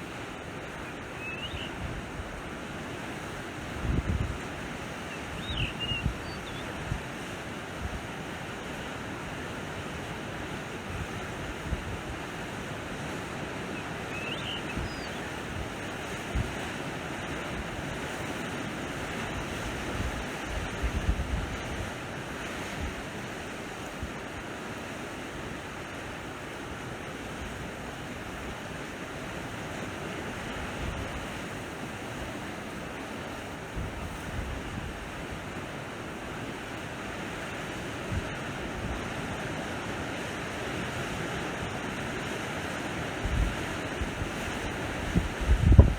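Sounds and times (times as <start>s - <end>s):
sea waves washing onto shore: 0.0s - 45.9s
faint high chirps: 0.8s - 1.7s, 13.8s - 15.3s
wind buffeting microphone: 3.7s - 4.4s, 43.2s - 45.9s.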